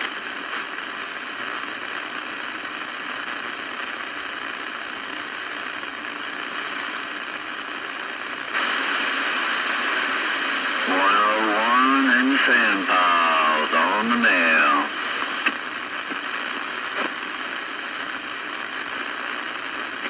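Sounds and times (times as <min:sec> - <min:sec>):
radio static hiss: 0:00.0 - 0:20.0.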